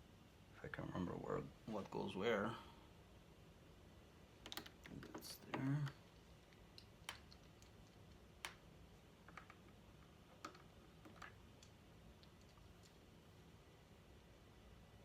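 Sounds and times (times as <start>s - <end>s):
small plastic clicks and taps: 4.4s - 8.6s, 9.3s - 13.0s.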